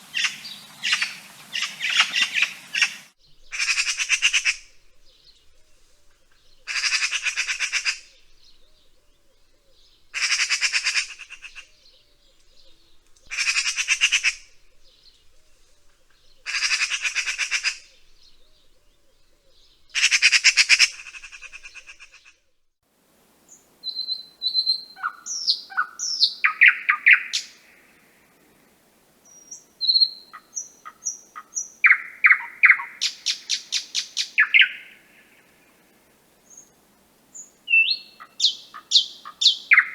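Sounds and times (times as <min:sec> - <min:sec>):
bird chirping and trilling: 0:00.1 - 0:05.2, 0:23.8 - 0:27.5, 0:29.4 - 0:35.0, 0:37.7 - 0:39.9.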